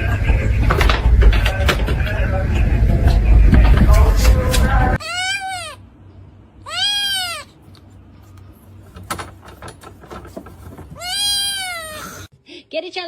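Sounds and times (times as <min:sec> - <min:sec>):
cat meowing: 0:05.0 - 0:05.8, 0:06.6 - 0:07.6, 0:11.0 - 0:12.3.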